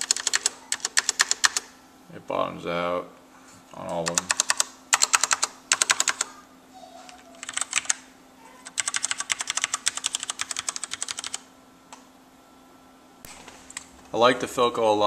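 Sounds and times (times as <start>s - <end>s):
mechanical keyboard typing: 0.0s - 1.7s, 4.0s - 6.3s, 7.4s - 8.0s, 8.6s - 11.4s.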